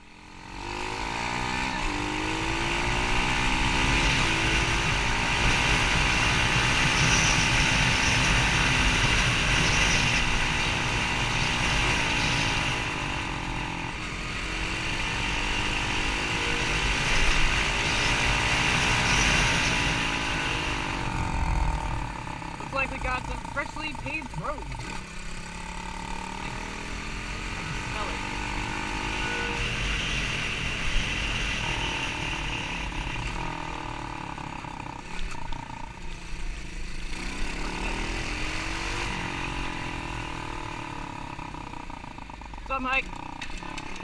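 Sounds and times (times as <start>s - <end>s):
motorbike engine revving: 0.0s - 44.0s
wind rumbling on microphone: 17.2s - 22.4s.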